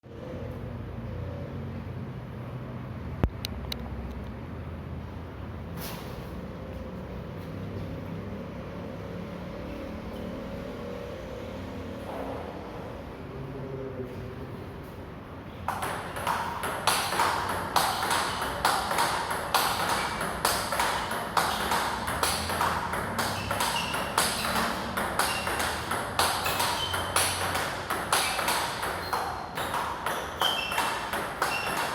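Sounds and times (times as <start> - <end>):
table tennis ball clicking: 15.7 - 31.9.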